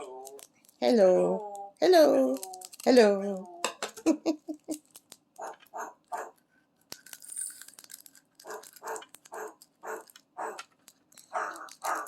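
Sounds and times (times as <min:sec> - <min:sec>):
parrot mimicking dog barks: 0:05.4 - 0:06.4, 0:08.5 - 0:10.6, 0:11.4 - 0:12.0.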